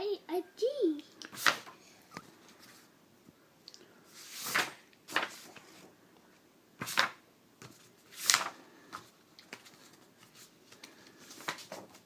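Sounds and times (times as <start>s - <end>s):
book pages flipping: 1.2s - 2.9s, 4.2s - 5.9s, 6.8s - 12.0s.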